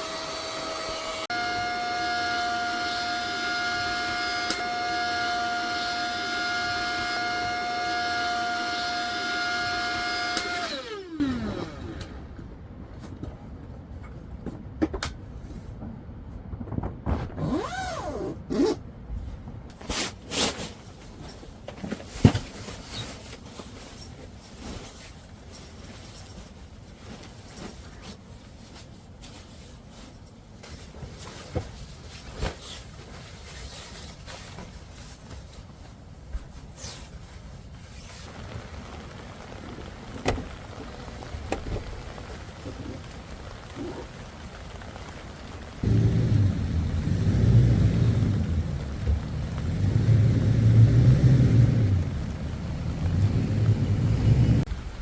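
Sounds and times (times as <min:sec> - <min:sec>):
objects knocking and scraping: 0:13.0 - 0:17.6.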